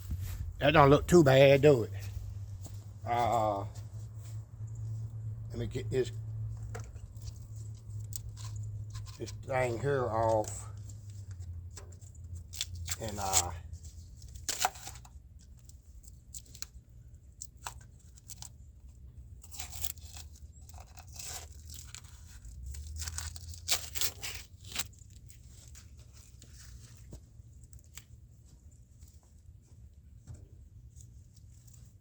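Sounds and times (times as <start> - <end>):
scraping and rustling: 19.4 - 29.8.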